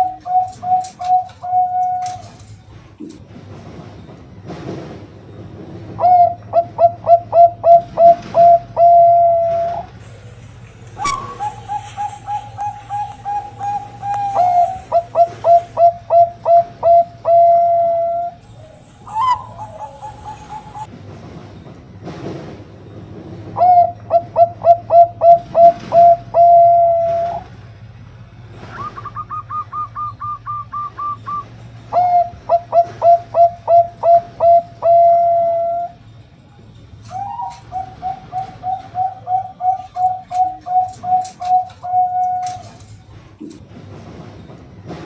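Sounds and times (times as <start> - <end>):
dove cooing: 0.0 - 2.2, 6.0 - 20.9, 23.6 - 27.4, 32.0 - 36.0, 37.1 - 42.7
higher-pitched bird notes: 6.0 - 20.9, 37.0 - 42.4.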